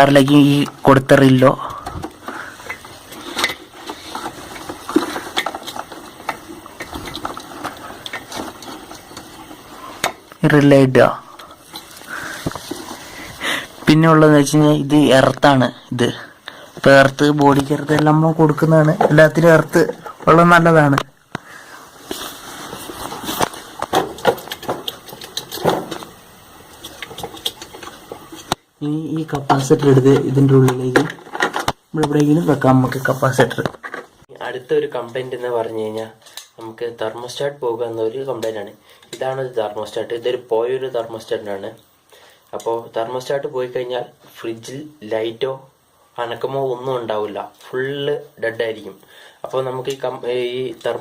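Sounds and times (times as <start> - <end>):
small electrical parts clicking: 23.3 - 28.6.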